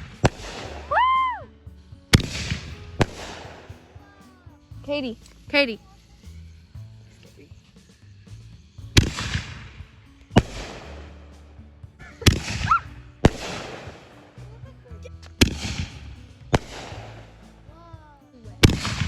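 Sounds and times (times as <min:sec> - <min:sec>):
firework whistles: 0:00.0 - 0:01.5, 0:12.3 - 0:14.2
firework bangs with crackling: 0:00.0 - 0:11.6, 0:12.2 - 0:14.6, 0:15.2 - 0:17.7, 0:18.5 - 0:19.0.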